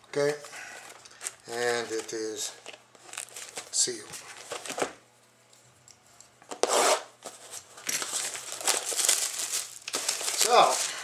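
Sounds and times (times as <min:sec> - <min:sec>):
plastic shrink-wrap tearing and crinkling: 0:01.1 - 0:04.8, 0:06.5 - 0:11.0.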